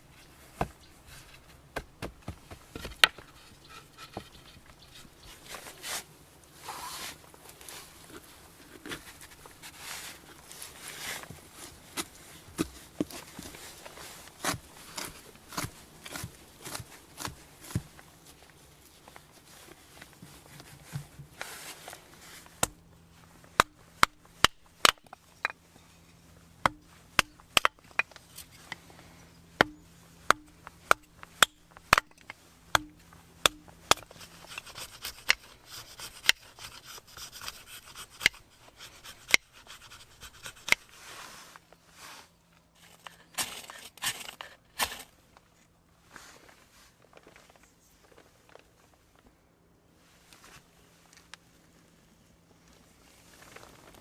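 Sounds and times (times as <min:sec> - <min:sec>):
scraping and rubbing wood: 0:00.6 - 0:18.0, 0:29.6 - 0:45.1.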